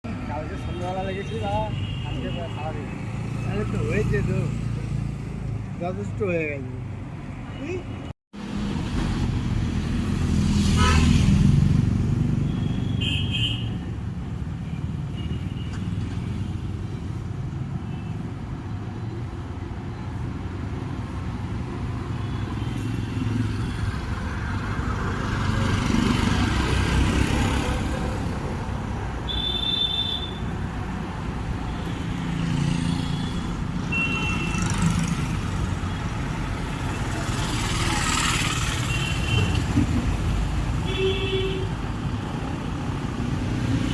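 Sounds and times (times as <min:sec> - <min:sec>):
road traffic rumble: 0:00.0 - 0:43.9
motorcycles passing: 0:22.9 - 0:29.2, 0:30.6 - 0:41.0.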